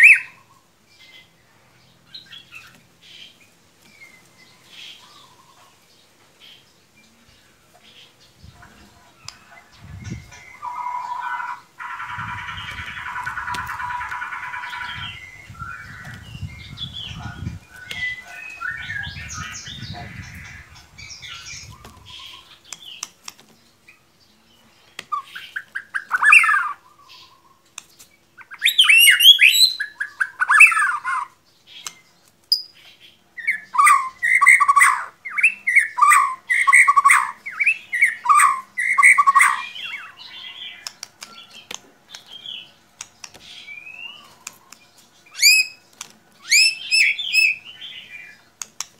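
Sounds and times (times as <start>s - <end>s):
bird singing whistled phrases: 28.4s - 31.3s, 33.4s - 40.2s, 45.3s - 45.8s, 46.4s - 48.1s.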